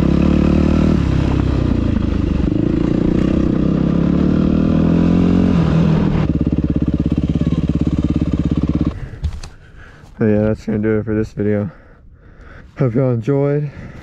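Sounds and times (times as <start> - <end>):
motorcycle engine running: 0.0 - 9.6.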